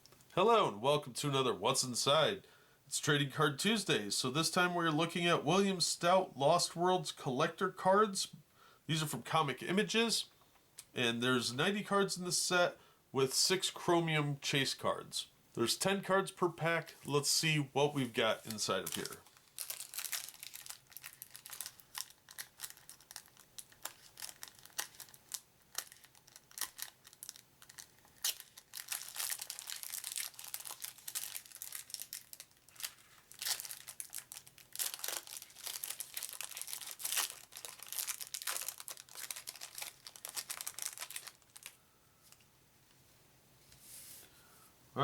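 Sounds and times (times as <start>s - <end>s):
wrapper tearing and crinkling: 18.4s - 41.8s.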